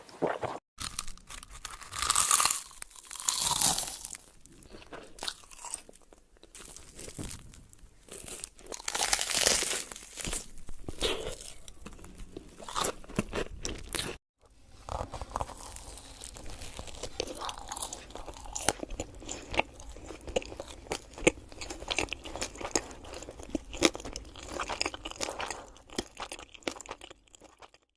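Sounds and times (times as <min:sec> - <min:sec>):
crunching and chewing crisp food: 0:00.8 - 0:27.9.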